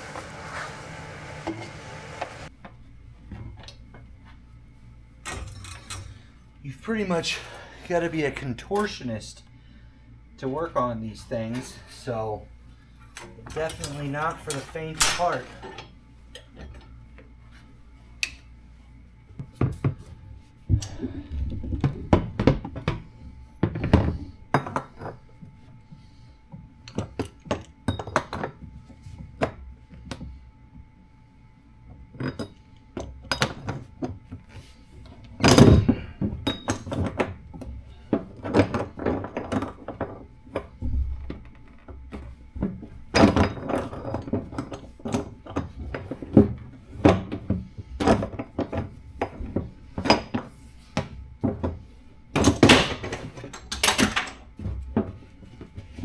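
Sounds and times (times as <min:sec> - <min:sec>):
metal clunks and clinks of tools: 0:05.3 - 0:06.3, 0:36.4 - 0:37.0.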